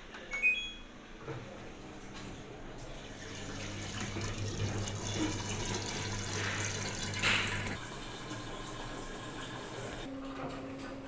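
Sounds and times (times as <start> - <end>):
water rushing into washing machine: 2.8 - 10.1.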